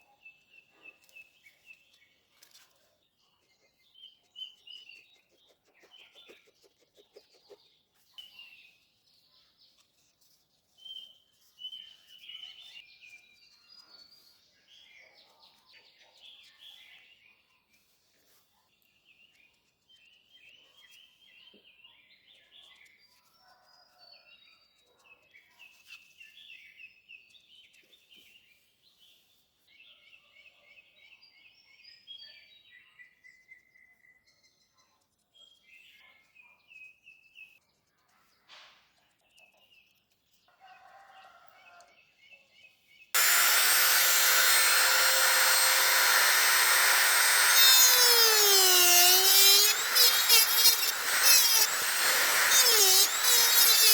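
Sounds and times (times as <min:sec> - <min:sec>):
electric power tool whining: 0:43.2 - 0:53.9.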